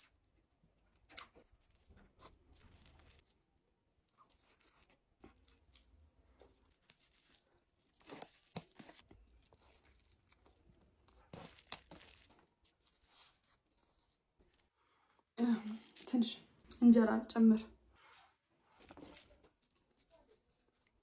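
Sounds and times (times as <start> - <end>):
food being chewed: 0.0 - 16.8, 18.0 - 21.0
food tearing and crunching: 0.9 - 16.2, 18.7 - 21.0.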